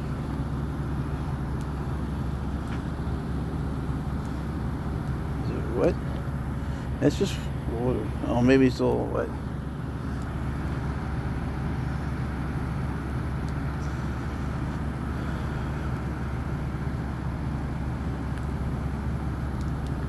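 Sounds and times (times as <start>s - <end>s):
low mechanical hum with hiss: 0.0s - 20.0s.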